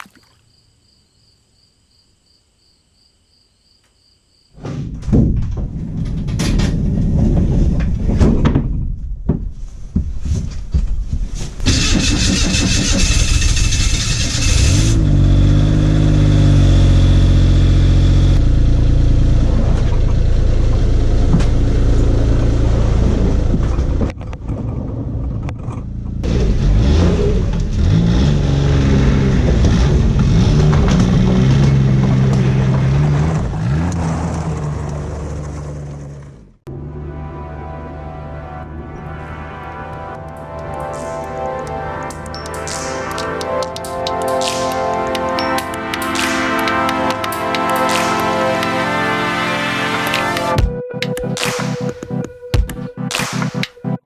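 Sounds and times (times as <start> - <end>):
vehicle engine starting and revving: 11.6 - 50.6.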